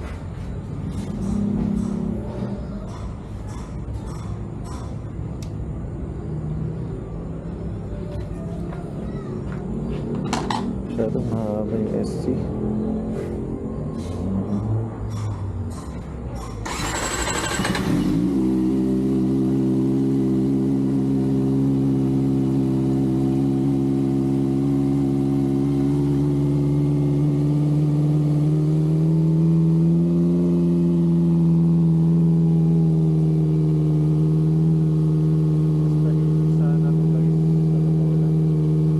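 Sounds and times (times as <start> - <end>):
motorcycle engine starting and idling: 15.9 - 38.9.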